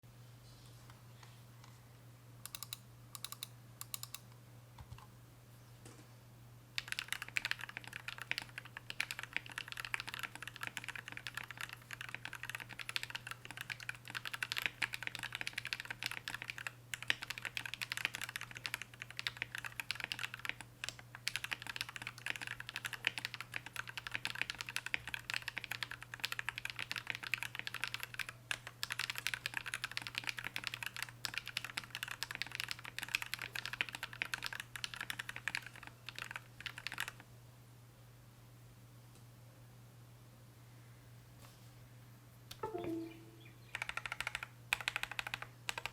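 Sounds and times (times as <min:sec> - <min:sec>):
mechanical keyboard typing: 0:02.5 - 0:04.2, 0:06.8 - 0:37.2, 0:43.7 - 0:45.9.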